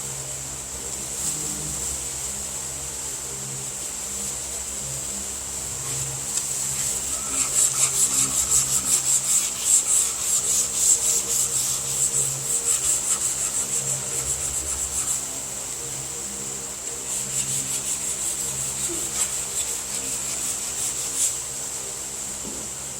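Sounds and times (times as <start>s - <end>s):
sandpaper rubbing on a panel: 5.7s - 15.6s, 16.8s - 21.7s.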